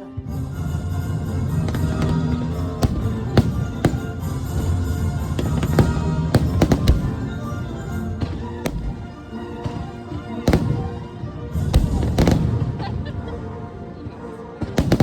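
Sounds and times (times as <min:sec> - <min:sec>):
music playing: 0:00.0 - 0:15.0
fireworks bangs: 0:01.4 - 0:12.9, 0:14.8 - 0:15.0.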